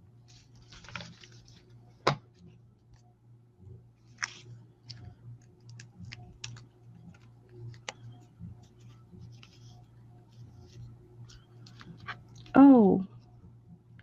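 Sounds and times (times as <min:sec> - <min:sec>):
low steady hum: 0:00.0 - 0:14.0
paper rustling: 0:00.3 - 0:01.6.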